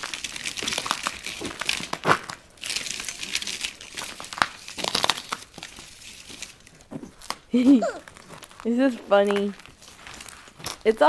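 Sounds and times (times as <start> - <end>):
footsteps crunching on icy snow: 5.5 - 11.0.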